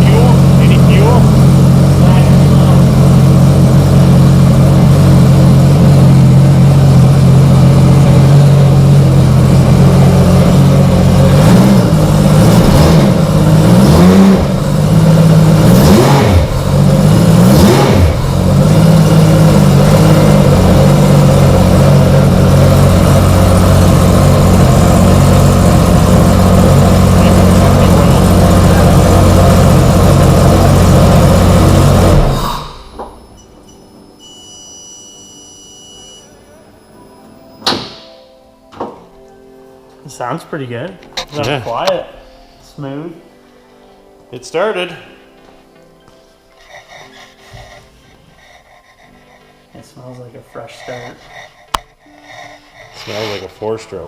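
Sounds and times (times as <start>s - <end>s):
engine idling and revving: 0.0s - 33.0s.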